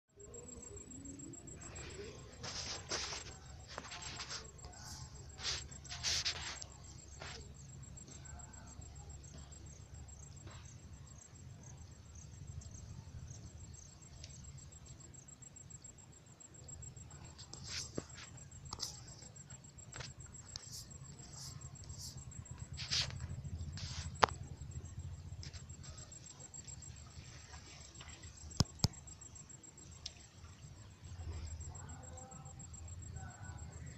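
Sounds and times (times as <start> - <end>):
crickets chirping: 0.1 - 33.9
faint voices: 0.2 - 12.0.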